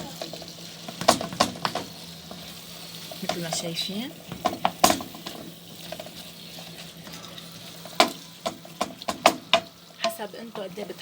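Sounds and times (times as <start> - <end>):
low sizzle of frying: 0.0 - 11.0
spoon stirring in a pan: 0.2 - 11.0
spoon knocking against pan: 0.9 - 1.9, 4.3 - 6.1, 7.9 - 10.7.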